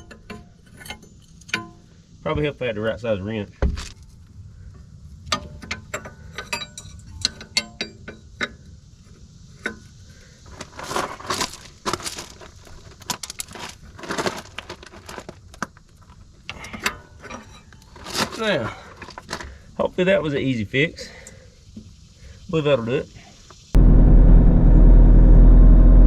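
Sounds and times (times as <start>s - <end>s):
wrench clinking on metal fitting: 5.3s - 8.5s.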